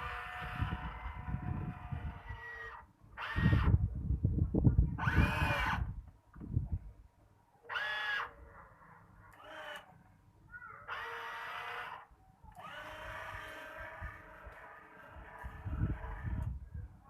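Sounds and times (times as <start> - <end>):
small electric motors whining: 0.0 - 3.8, 5.0 - 5.9, 7.7 - 8.3, 9.4 - 9.9, 10.9 - 16.6.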